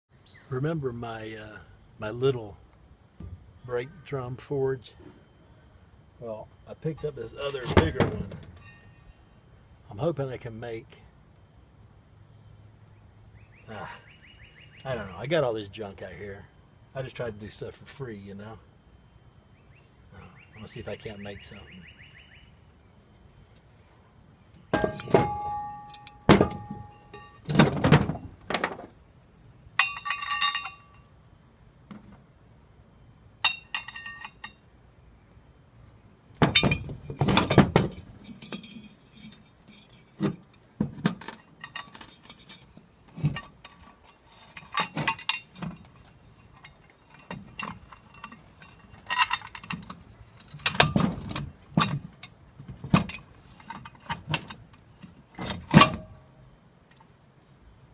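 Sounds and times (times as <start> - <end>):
heavy metal parts clanking: 24.7 - 28.6, 29.8 - 31.0, 33.4 - 34.6, 36.4 - 56.3
short metal rattles: 24.7 - 28.9, 36.3 - 56.3.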